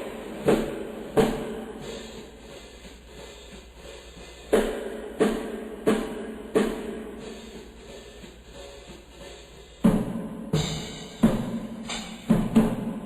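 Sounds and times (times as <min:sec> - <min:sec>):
heavy drum strikes: 0:00.0 - 0:13.0.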